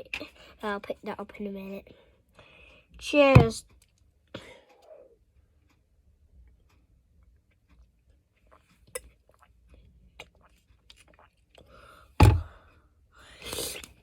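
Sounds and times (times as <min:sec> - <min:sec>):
mouth clicks and swallows: 0:08.4 - 0:11.8.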